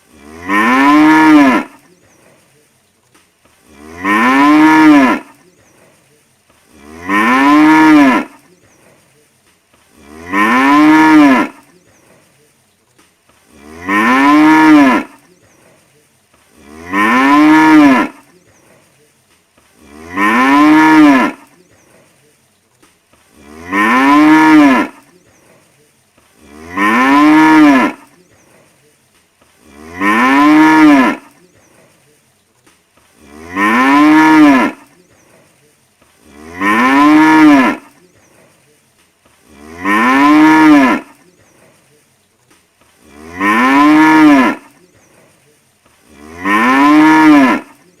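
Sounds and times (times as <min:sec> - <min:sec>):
cow mooing: 0:00.1 - 0:01.8, 0:03.7 - 0:05.4, 0:06.7 - 0:08.4, 0:10.0 - 0:11.7, 0:13.5 - 0:15.2, 0:16.6 - 0:18.3, 0:19.8 - 0:21.5, 0:23.4 - 0:25.0, 0:26.4 - 0:28.1, 0:29.6 - 0:31.4, 0:33.2 - 0:34.9, 0:36.2 - 0:38.0, 0:39.5 - 0:41.2, 0:43.0 - 0:44.7, 0:46.1 - 0:47.8.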